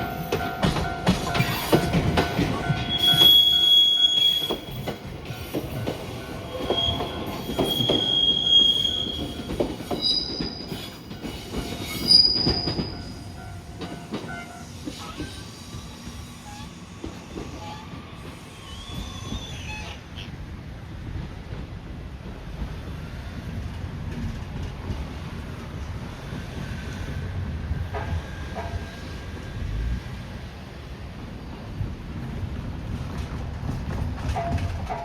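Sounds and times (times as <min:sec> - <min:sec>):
train wheels clacking: 0:00.0 - 0:20.0, 0:32.2 - 0:35.0
train wheels squealing on rails: 0:00.0 - 0:20.5, 0:26.0 - 0:30.1.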